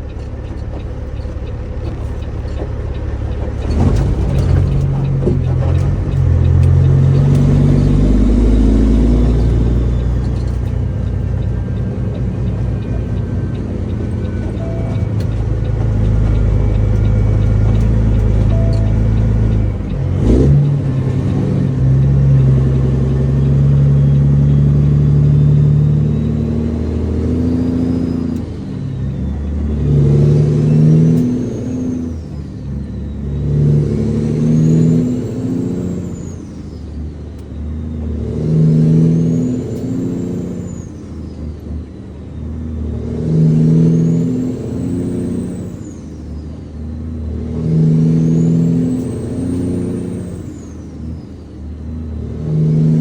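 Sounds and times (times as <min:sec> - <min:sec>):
high engine whine: 0:00.0 - 0:53.0
truck diesel engine pulling: 0:00.0 - 0:53.0.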